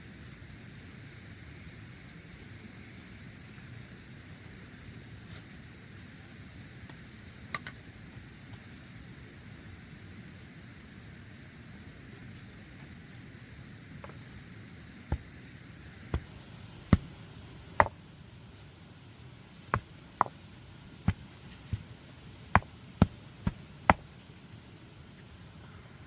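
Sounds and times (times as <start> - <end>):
sharp knocks: 22.6 - 24.1.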